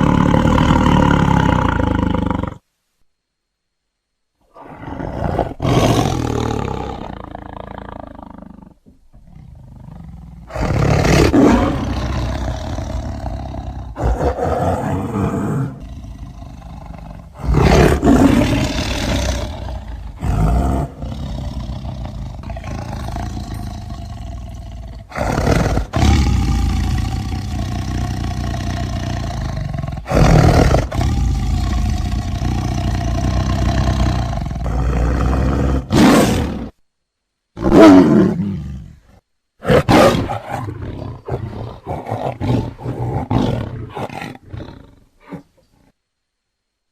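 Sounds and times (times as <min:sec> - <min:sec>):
big cat roaring: 0:00.0 - 0:02.6, 0:04.5 - 0:36.8, 0:37.6 - 0:45.5.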